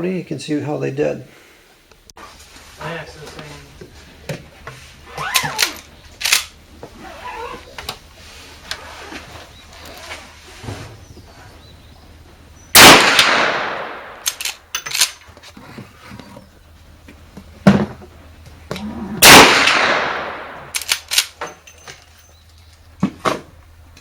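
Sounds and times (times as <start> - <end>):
rifle shots: 12.7 - 15.1, 19.2 - 21.4.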